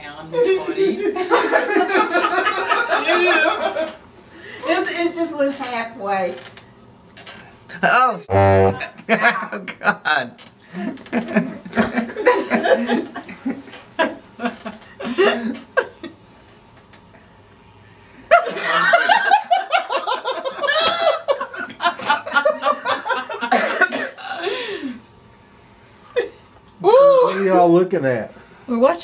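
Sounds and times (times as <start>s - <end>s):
group of people laughing: 0.4s - 3.9s, 11.2s - 16.0s, 18.3s - 24.5s.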